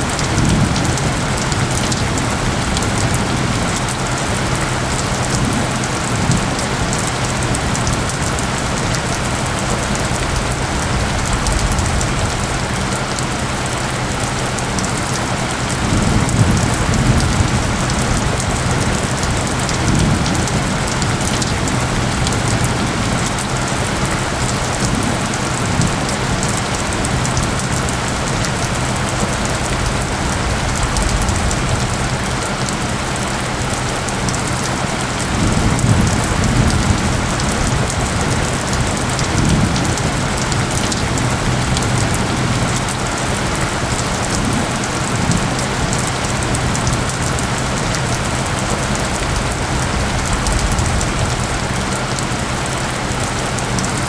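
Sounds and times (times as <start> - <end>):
dense rainfall: 0.0 - 54.0
thunder rumbles: 0.0 - 54.0.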